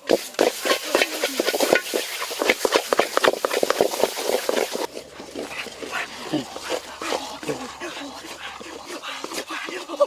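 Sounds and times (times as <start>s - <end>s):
utensil scraping a pan: 0.0s - 9.7s
food sizzling in a pan: 0.1s - 2.6s.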